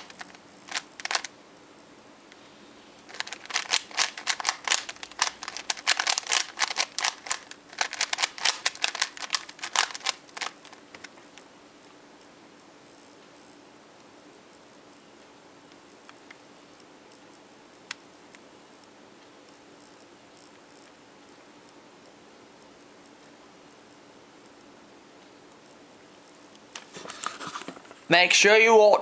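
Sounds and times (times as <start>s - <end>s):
puzzle cube clicking as turned: 0.0s - 1.3s, 3.0s - 11.4s.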